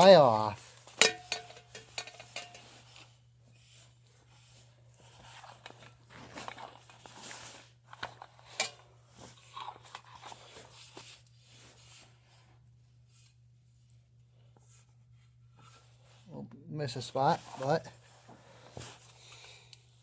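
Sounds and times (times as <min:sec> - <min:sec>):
cloth rubbing and wiping metal: 0:02.0 - 0:05.4.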